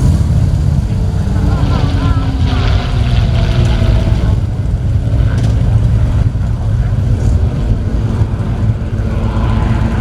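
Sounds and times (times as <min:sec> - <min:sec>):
propeller plane engines droning: 0:00.0 - 0:10.0.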